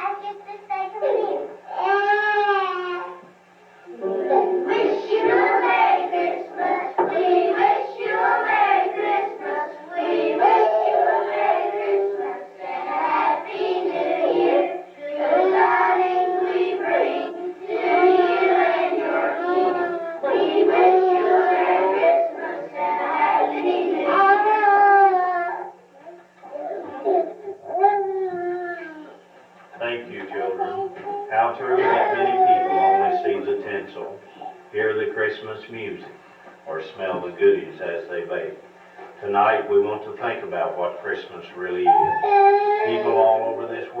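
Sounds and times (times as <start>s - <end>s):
children singing: 3.9s - 25.7s.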